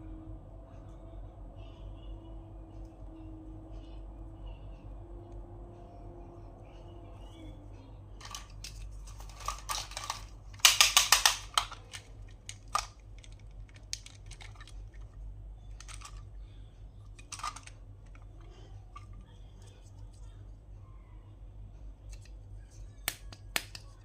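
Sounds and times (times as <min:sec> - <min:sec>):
plastic packaging clicks and crinkles: 0:08.2 - 0:16.3, 0:17.1 - 0:19.2.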